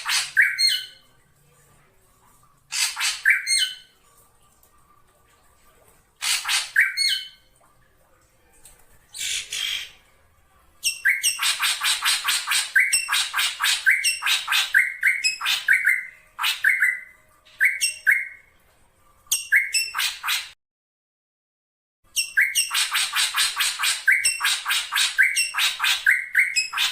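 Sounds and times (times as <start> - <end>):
bird calling in harsh squawks: 0.0 - 0.9, 2.7 - 3.9, 6.2 - 7.4, 9.2 - 9.9, 10.8 - 18.4, 22.2 - 26.9.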